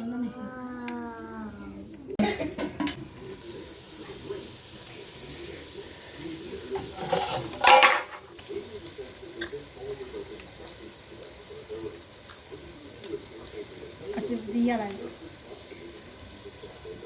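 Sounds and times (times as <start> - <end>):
metal utensil scraping in a pan: 4.2 - 8.6.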